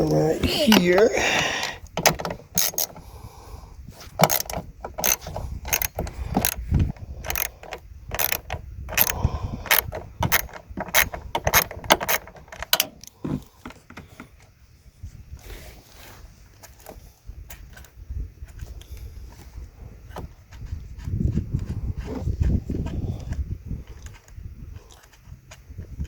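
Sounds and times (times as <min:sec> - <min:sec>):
ratchet wrench clicking: 0:02.0 - 0:03.0, 0:04.2 - 0:13.1
small metal knocks: 0:04.2 - 0:14.4.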